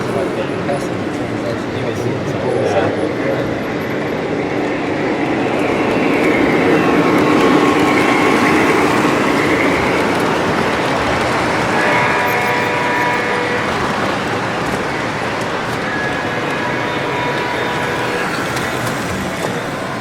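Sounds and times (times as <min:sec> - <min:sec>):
model trains rumbling and rattling: 0:00.0 - 0:20.0.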